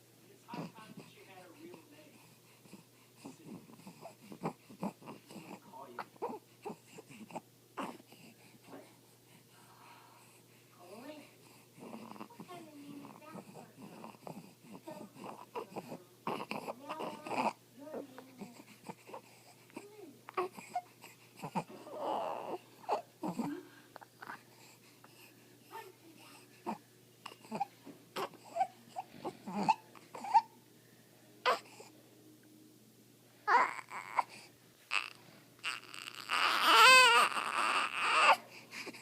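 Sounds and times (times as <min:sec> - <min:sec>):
baby crying: 0:03.2 - 0:08.0, 0:11.8 - 0:23.5, 0:25.7 - 0:30.6, 0:31.4 - 0:31.9, 0:33.5 - 0:39.0.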